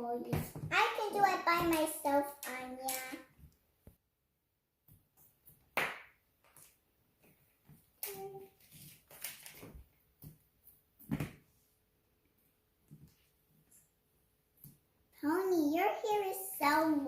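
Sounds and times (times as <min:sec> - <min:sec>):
child's voice: 0:00.0 - 0:03.3, 0:08.0 - 0:08.6, 0:15.2 - 0:17.0
toys being handled: 0:08.0 - 0:10.4.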